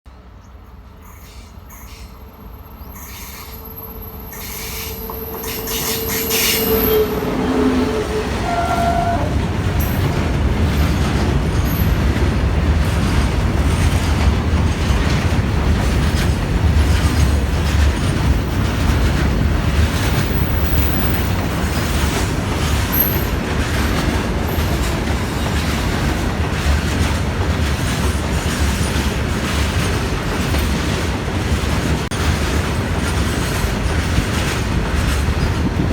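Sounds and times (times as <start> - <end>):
wheels squealing on track: 3.0 - 9.4
train wagons rumbling: 3.1 - 35.9
train horn: 3.4 - 10.0.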